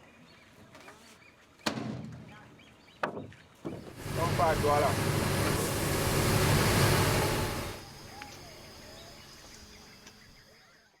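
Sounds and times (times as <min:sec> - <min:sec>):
engine running: 0:03.8 - 0:09.8
insects droning: 0:03.8 - 0:11.0
loud rushing noise: 0:04.0 - 0:08.1.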